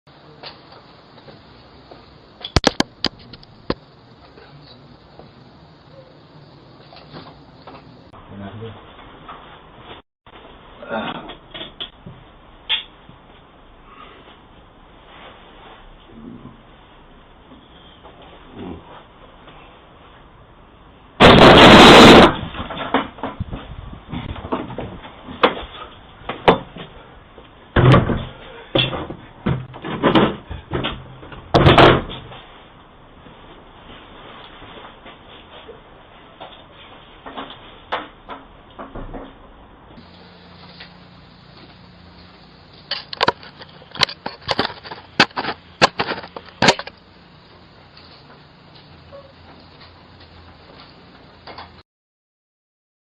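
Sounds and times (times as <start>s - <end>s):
distorted crash: 21.2s - 23.0s.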